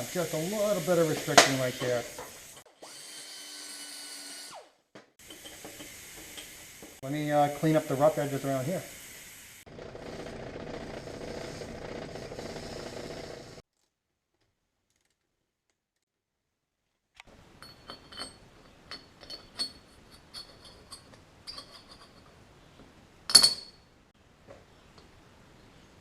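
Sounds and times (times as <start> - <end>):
power tool running: 9.7 - 13.6
metal parts clinking: 17.6 - 22.4.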